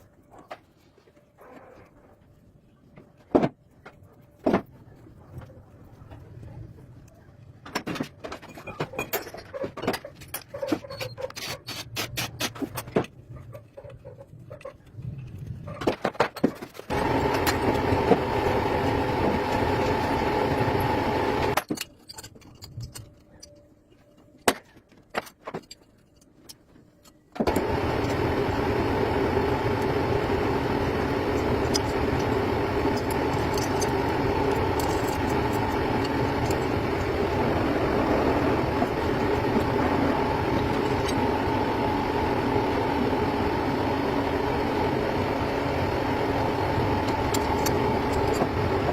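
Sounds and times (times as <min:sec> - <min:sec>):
clicks: 0:16.6 - 0:24.3, 0:25.2 - 0:48.9
motor running: 0:16.9 - 0:21.6, 0:27.4 - 0:48.9.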